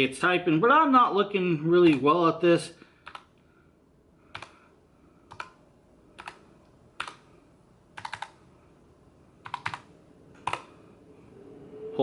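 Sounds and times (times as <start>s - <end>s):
mechanical keyboard keystrokes: 6.2s - 6.4s, 7.0s - 7.2s, 8.0s - 8.4s, 9.4s - 10.7s.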